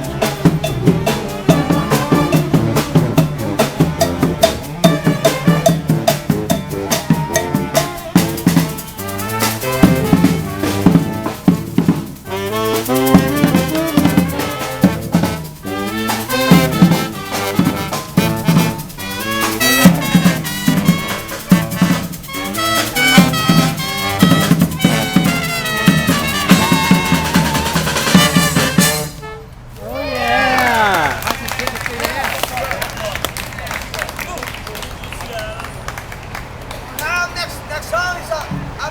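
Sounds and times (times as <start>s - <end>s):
marching drum beat: 0.0s - 29.2s
brass band playing: 0.0s - 31.3s.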